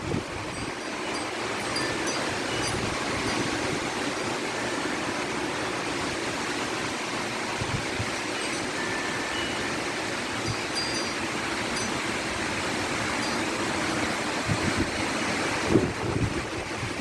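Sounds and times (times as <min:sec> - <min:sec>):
strong wind blowing: 0:00.0 - 0:17.0
faint high chime tones: 0:00.5 - 0:05.1, 0:08.1 - 0:12.0.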